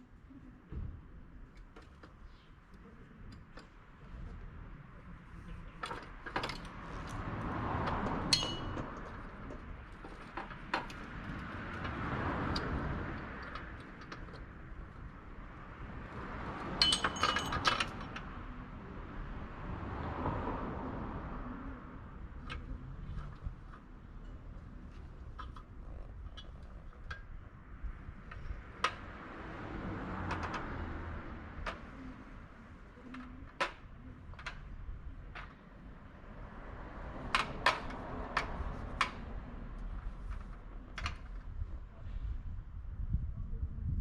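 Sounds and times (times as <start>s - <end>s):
metal tools clinking: 8.3s - 8.8s, 16.8s - 18.0s.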